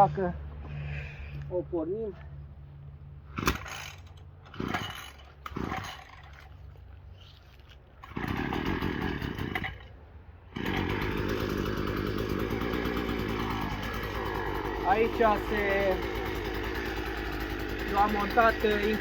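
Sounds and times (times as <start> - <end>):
starter cord pulls: 3.4 - 6.5, 10.6 - 19.0
two-stroke engine running: 8.1 - 9.8, 10.6 - 19.0.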